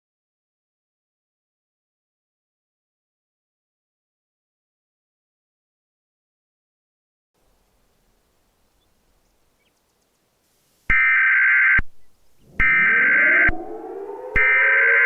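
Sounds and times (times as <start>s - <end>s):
low tone sliding up in pitch: 12.4s - 15.0s
screechy digital data tone bursts: 12.5s - 15.0s.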